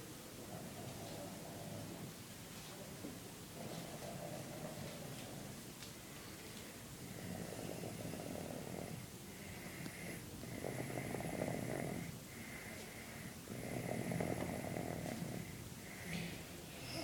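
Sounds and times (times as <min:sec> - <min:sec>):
baby snoring: 0:07.1 - 0:17.0.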